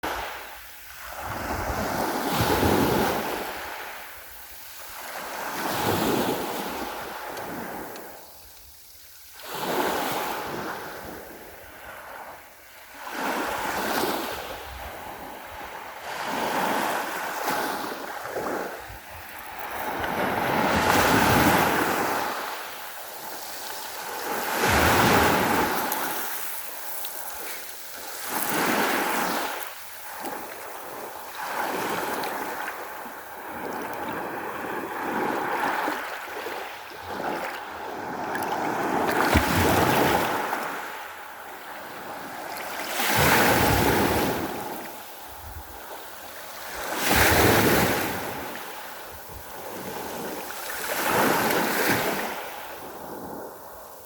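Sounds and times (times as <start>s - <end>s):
sea waves washing ashore: 0.0s - 54.0s
wind on microphone: 1.0s - 3.8s, 13.0s - 40.9s.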